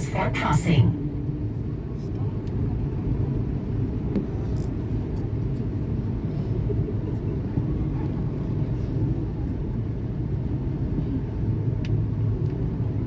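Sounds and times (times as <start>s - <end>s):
electric train rumbling: 0.0s - 1.5s.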